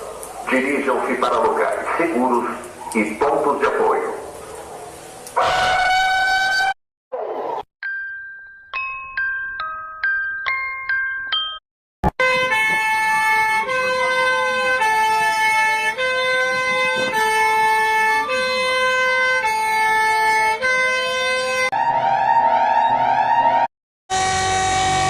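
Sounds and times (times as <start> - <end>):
siren wail: 0.0 - 3.3, 4.0 - 7.5, 12.2 - 25.0.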